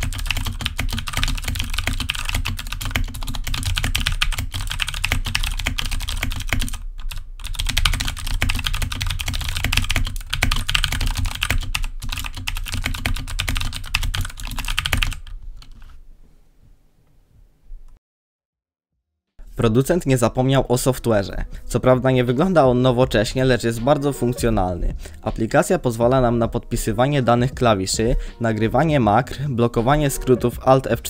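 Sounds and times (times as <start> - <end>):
fast mechanical keyboard typing: 0.0 - 15.8.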